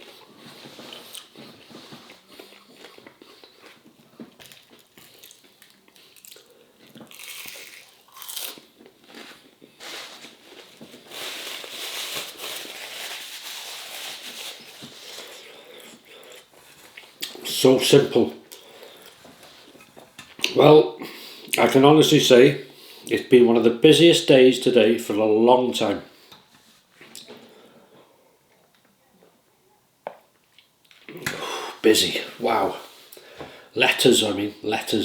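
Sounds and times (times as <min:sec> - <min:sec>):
person chewing crisp food: 0:00.0 - 0:17.4.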